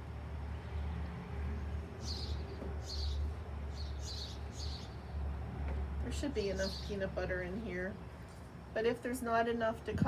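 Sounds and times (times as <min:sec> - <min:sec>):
small birds chirping: 0:00.6 - 0:05.3, 0:06.1 - 0:07.7.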